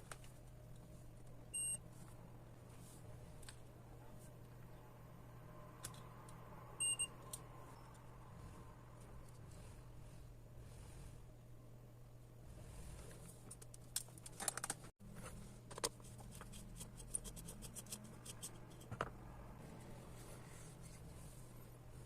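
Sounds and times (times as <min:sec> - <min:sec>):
faint steady hum: 0:00.0 - 0:22.0
small parts and tools clicking: 0:13.2 - 0:14.9, 0:15.7 - 0:19.0.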